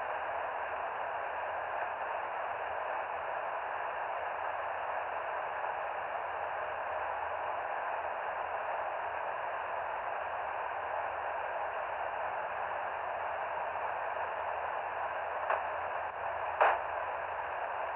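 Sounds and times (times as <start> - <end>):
radio receiver hiss: 12.2 - 17.9.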